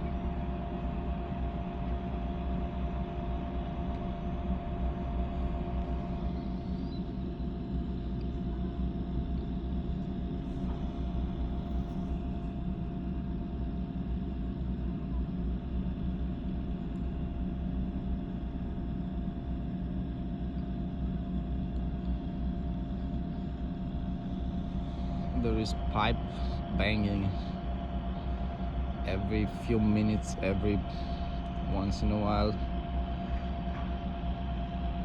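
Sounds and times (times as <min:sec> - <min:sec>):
steady mid-pitched hum: 0:00.0 - 0:35.0
drilling rig machinery rumbling: 0:23.5 - 0:33.9.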